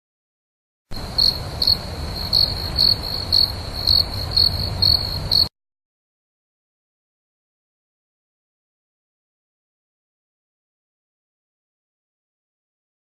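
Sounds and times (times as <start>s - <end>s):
crickets chirping: 0.9s - 5.5s
low background rumble: 0.9s - 5.5s.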